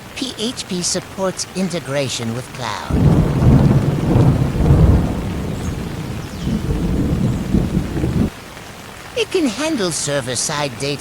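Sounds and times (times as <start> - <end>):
rain falling: 0.0 - 11.0
rolling thunder: 2.9 - 8.3.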